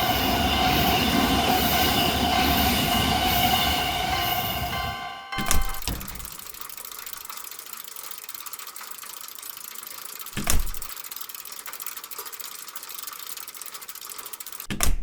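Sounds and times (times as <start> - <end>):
rapid mechanical clicking: 5.4 - 15.0.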